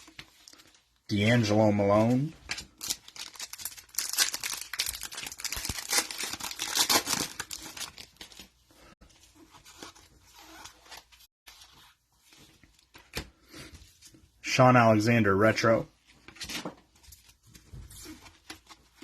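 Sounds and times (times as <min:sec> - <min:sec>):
foil wrapper tearing and crinkling: 0:02.6 - 0:08.4.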